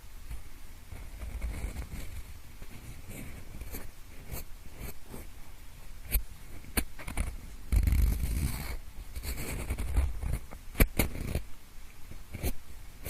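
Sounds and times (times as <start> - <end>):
pencil scratching and rubbing: 1.0 - 5.3, 6.1 - 11.4, 12.3 - 12.6.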